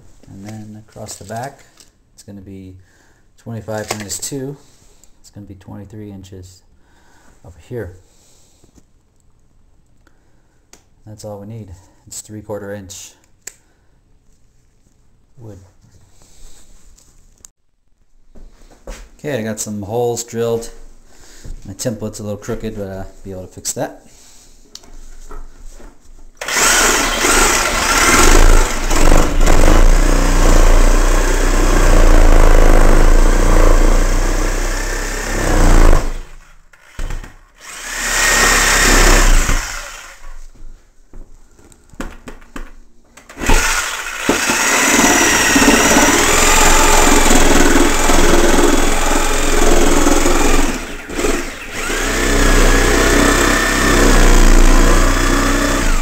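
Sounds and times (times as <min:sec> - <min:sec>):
electric saw cutting wood: 0:26.4 - 0:40.3, 0:43.3 - 0:56.0.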